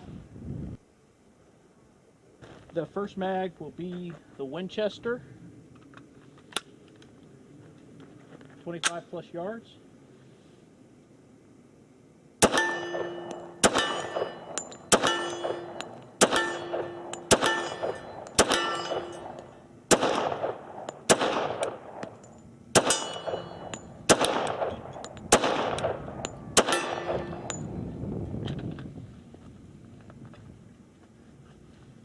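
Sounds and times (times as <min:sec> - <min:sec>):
pistol shots: 0:12.4 - 0:27.6.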